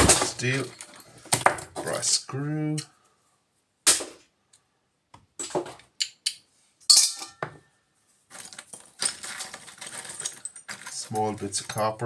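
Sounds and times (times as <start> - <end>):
scrap metal clinking into buckets: 0.0 - 2.3, 6.9 - 7.5, 8.3 - 12.0.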